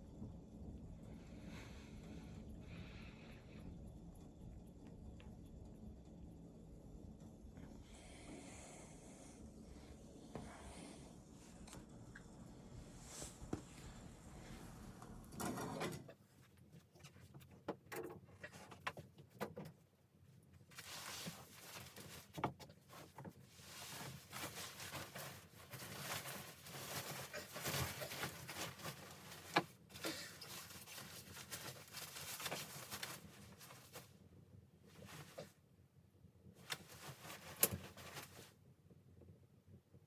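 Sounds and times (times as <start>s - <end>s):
handling rustling: 20.6s - 34.2s, 34.9s - 35.5s, 36.6s - 38.5s.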